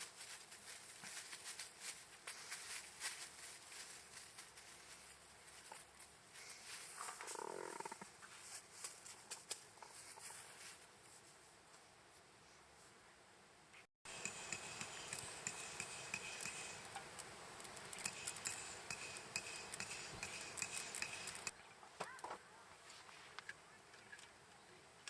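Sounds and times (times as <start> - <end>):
metal utensil scraping metal pot: 14.1 - 21.5.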